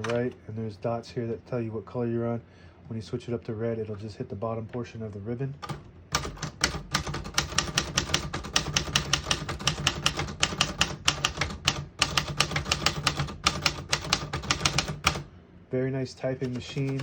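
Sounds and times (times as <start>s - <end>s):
manual typewriter typing: 5.6s - 15.3s, 16.3s - 17.0s.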